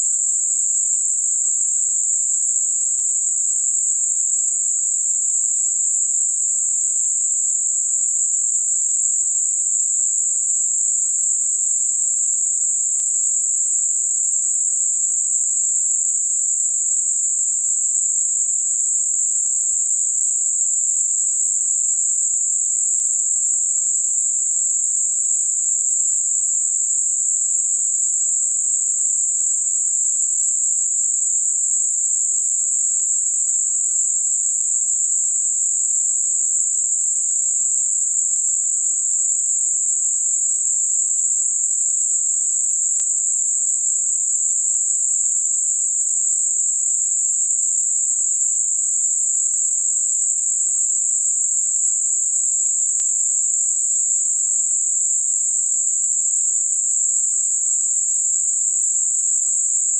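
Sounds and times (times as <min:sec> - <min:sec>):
steady high-pitched hiss: 0:00.0 - 0:59.9.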